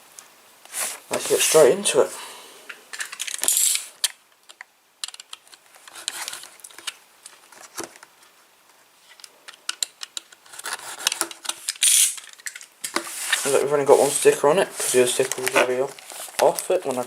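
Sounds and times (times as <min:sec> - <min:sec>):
cardboard rustling: 0:10.3 - 0:11.8, 0:12.4 - 0:17.0.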